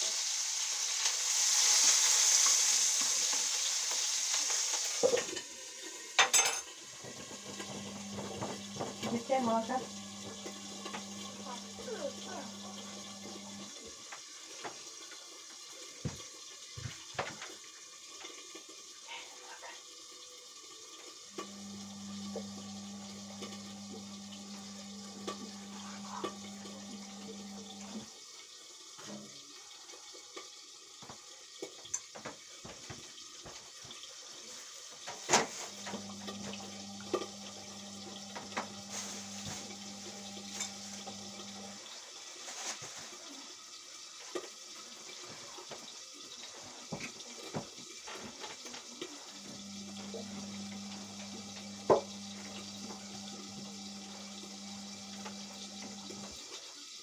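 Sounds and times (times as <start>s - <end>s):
drum motor humming: 7.2s - 13.7s.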